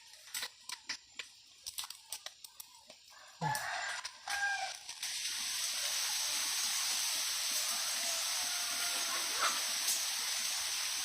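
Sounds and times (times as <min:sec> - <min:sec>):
steady hiss: 0:00.0 - 0:11.0
rooster crowing: 0:03.1 - 0:04.8, 0:07.5 - 0:09.7.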